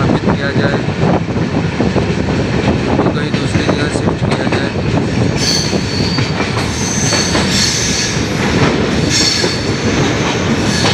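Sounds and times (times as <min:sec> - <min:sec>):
train wheels rumbling: 0:00.0 - 0:10.9
wheel squeal: 0:05.4 - 0:08.2.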